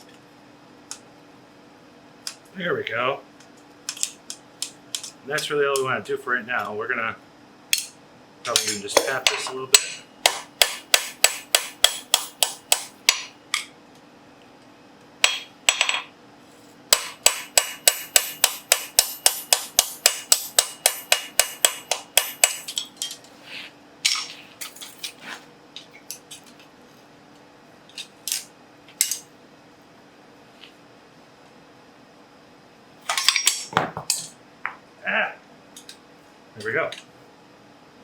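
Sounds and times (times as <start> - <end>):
hammer tapping on metal: 8.6 - 13.7, 15.2 - 16.0, 16.9 - 22.9.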